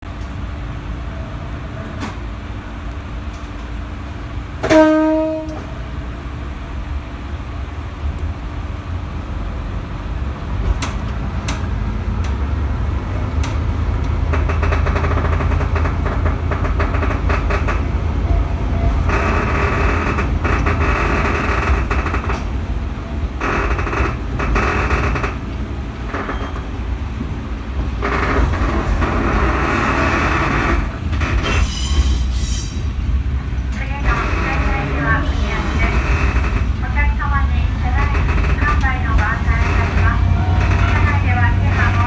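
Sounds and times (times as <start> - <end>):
diesel engine rumble: 0.0 - 42.0
train horn: 4.6 - 5.8, 39.6 - 42.0.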